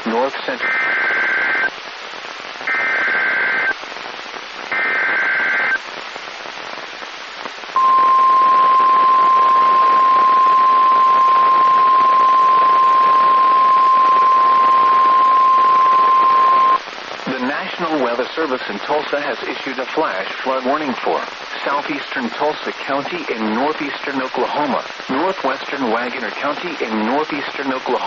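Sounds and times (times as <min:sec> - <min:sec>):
radio static: 0:00.0 - 0:28.0
steady alarm tone: 0:07.8 - 0:16.8.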